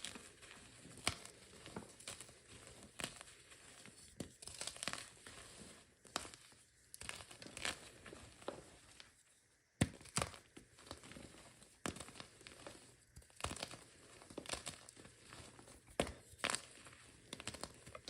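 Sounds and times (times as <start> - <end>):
chalk being crushed: 0.0 - 9.1.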